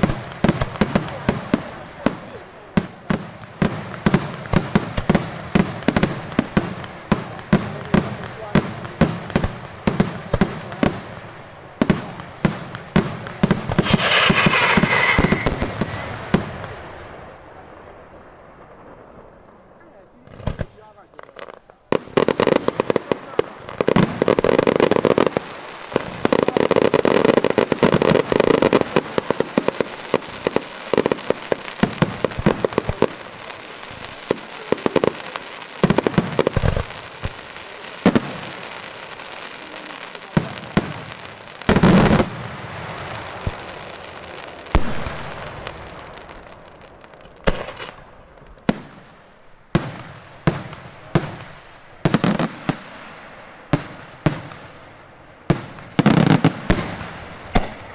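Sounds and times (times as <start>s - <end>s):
rolling echo: 0.0s - 25.7s
fireworks crackling bangs: 0.0s - 57.9s
loud fireworks reports: 0.0s - 57.9s.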